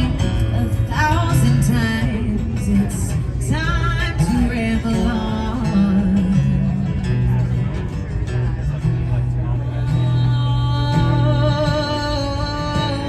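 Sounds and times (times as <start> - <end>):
low bass notes: 0.0 - 13.0.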